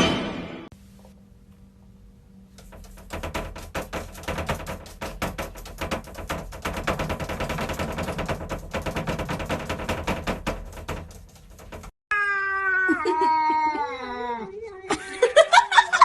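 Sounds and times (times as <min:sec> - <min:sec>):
rapid clicking: 0:02.5 - 0:11.9
cat meowing: 0:12.1 - 0:14.9.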